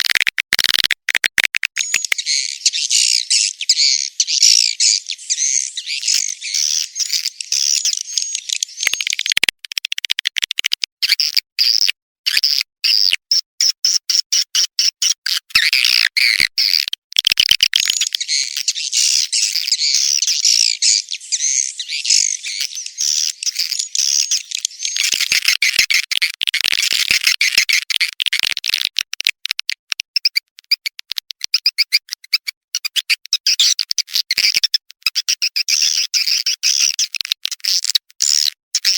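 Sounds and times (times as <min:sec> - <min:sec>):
swiftlets twittering and chirping: 0:01.8 - 0:09.5, 0:17.7 - 0:26.2, 0:31.5 - 0:38.9.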